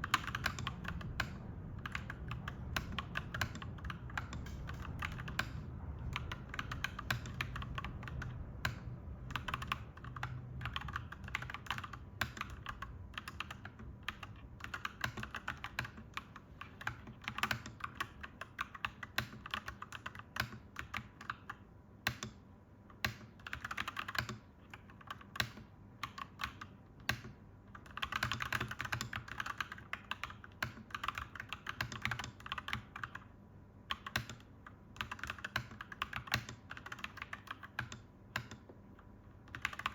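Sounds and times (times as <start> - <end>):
low steady rumble: 0.0 - 18.2
mechanical keyboard typing: 0.0 - 39.9.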